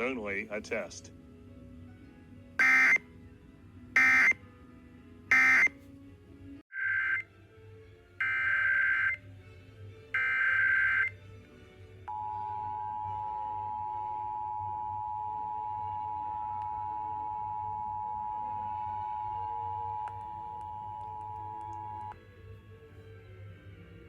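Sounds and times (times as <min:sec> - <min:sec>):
data burst squawks: 0:02.6 - 0:03.0, 0:05.3 - 0:05.7
two-tone attention signal: 0:02.6 - 0:03.0, 0:04.0 - 0:04.4, 0:05.3 - 0:05.7, 0:08.2 - 0:09.2, 0:12.1 - 0:22.1.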